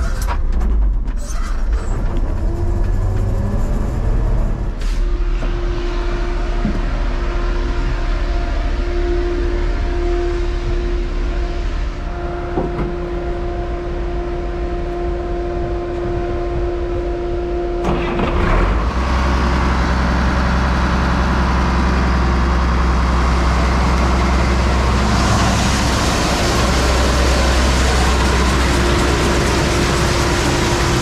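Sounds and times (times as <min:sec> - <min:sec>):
constant whine: 0:02.0 - 0:31.0
heavy machinery engine running: 0:02.0 - 0:31.0.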